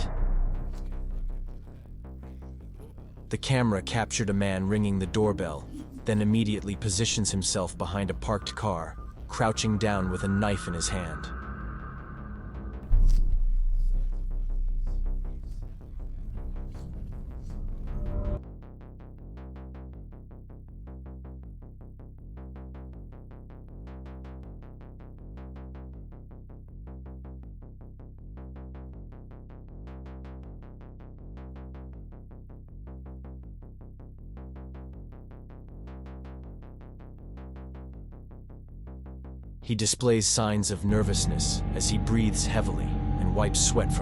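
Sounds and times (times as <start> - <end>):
low synthesizer loop: 0.0 - 18.4, 40.7 - 44.0.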